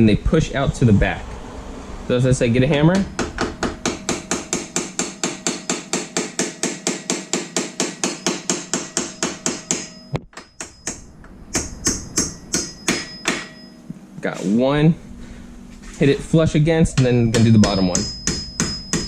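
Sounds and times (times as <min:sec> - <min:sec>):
hammer tapping metal pin: 0:03.0 - 0:13.7, 0:17.0 - 0:19.0.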